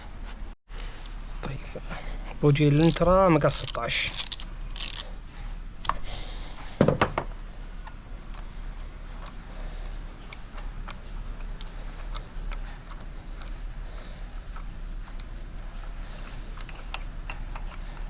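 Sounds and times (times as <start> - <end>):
ratchet wrench clicking: 2.7 - 5.1.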